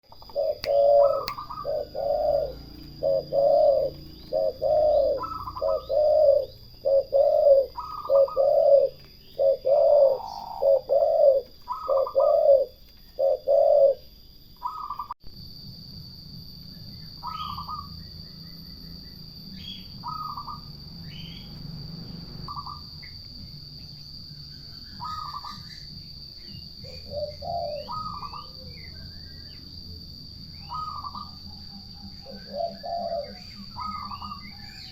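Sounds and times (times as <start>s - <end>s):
steady high-pitched tone: 0.0s - 12.8s
high-pitched bird calls: 0.0s - 15.2s, 17.1s - 21.6s, 22.4s - 23.2s, 24.6s - 29.7s, 30.6s - 34.9s
turtle dove cooing: 0.0s - 15.2s, 17.2s - 17.9s, 19.6s - 21.6s, 24.9s - 25.8s, 26.4s - 29.7s, 30.5s - 34.9s.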